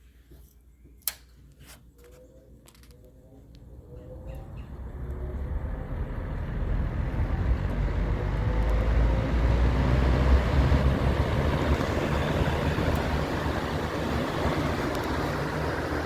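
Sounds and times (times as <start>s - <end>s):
electric box fan running: 3.6s - 16.0s.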